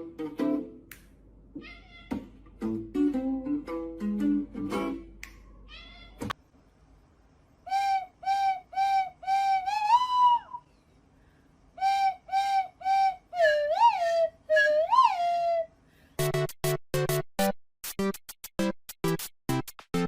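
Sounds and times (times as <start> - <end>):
cat meowing: 1.6 - 2.3, 5.6 - 6.4.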